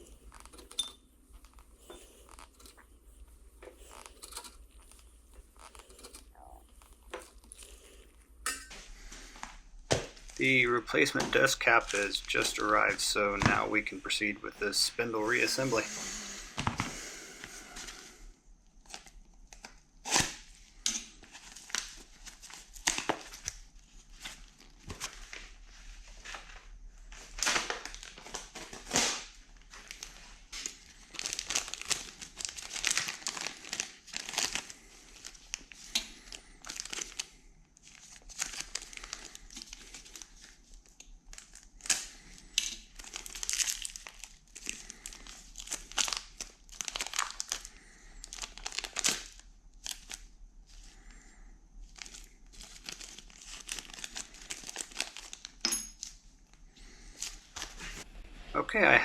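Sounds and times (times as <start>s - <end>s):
packaging crinkling: 0.0s - 8.2s, 10.0s - 15.8s, 18.7s - 58.0s.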